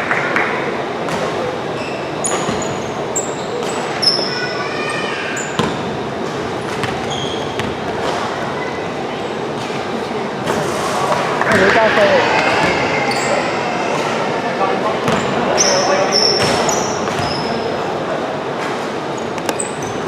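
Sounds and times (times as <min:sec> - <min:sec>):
murmur of voices: 0:00.0 - 0:20.0
sneakers squeaking on court: 0:01.1 - 0:04.4, 0:05.4 - 0:08.3, 0:15.0 - 0:17.8, 0:19.1 - 0:20.0
basketball bouncing: 0:05.6 - 0:05.9, 0:06.7 - 0:08.2, 0:15.0 - 0:15.3, 0:16.4 - 0:17.4.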